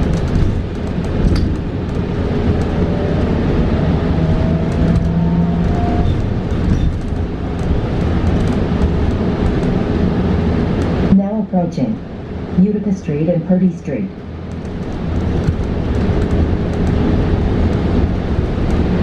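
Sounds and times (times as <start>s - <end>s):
bus road rumble: 0.0s - 19.0s
small rattles and clicks: 6.0s - 9.8s.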